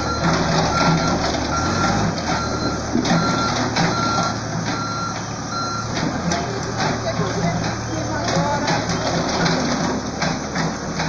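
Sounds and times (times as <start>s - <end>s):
reversing alarm beeping: 0.0s - 6.0s
engine running: 0.0s - 11.0s.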